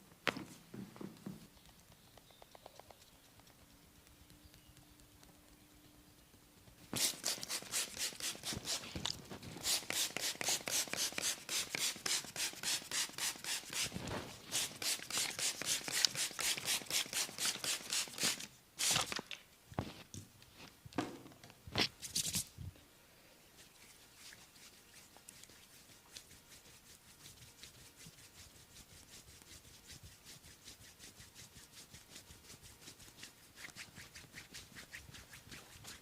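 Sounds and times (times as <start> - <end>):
scratchy strokes on hair and skin: 6.8 - 19.0, 22.0 - 22.6, 23.5 - 36.0.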